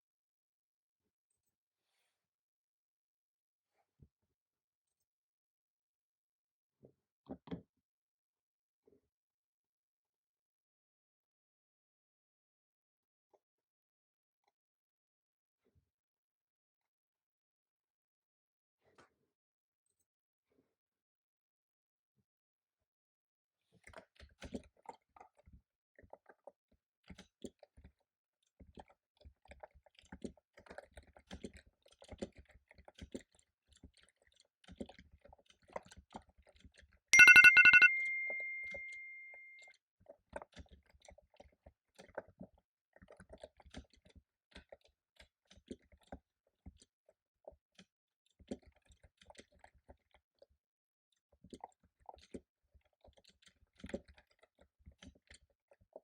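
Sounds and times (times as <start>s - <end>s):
computer keyboard typing: 37.2s - 39.4s
electronic timer alarm chiming: 37.2s - 39.6s.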